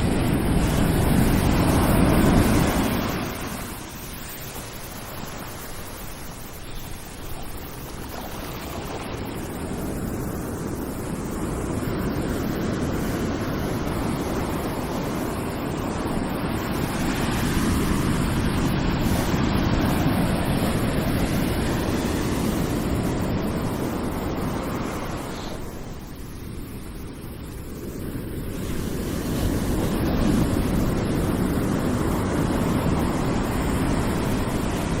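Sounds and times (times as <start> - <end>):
ocean surf breaking: 0.0 - 6.4, 11.2 - 26.2.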